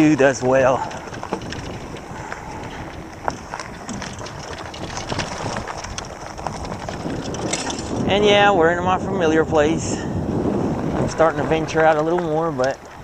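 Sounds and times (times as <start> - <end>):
light clicks and rattles: 0.0 - 8.1
bicycle tyres rolling: 0.0 - 13.0
wind noise on microphone: 0.0 - 13.0.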